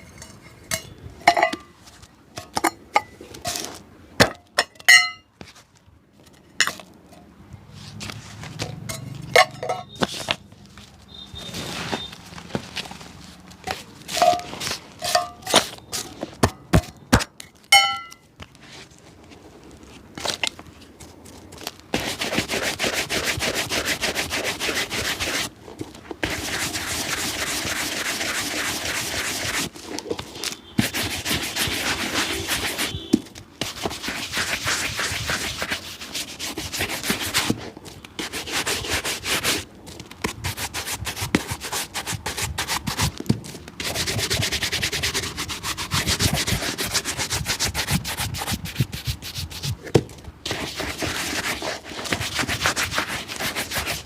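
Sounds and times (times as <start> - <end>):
brush strokes on shoe: 10.0 - 16.4, 22.0 - 25.6, 26.2 - 43.2, 43.8 - 54.0.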